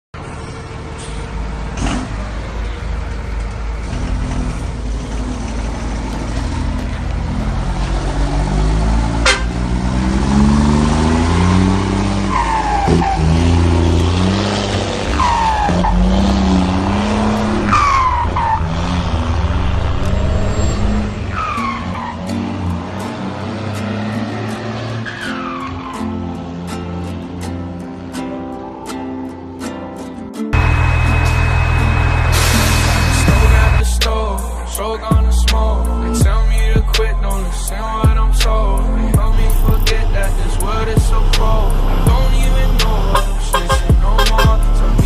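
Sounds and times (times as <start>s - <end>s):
car engine idling and revving: 0.2s - 29.6s, 30.5s - 45.0s
falling turbo whistle: 30.6s - 33.8s
sharp exhaust crack: 30.6s - 34.2s.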